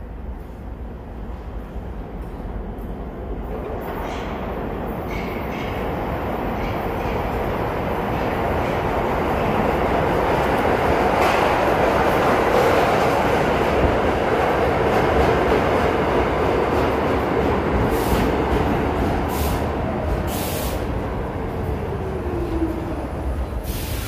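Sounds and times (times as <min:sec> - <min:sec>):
subway train rumbling: 0:00.0 - 0:24.0
short hisses: 0:23.6 - 0:24.0.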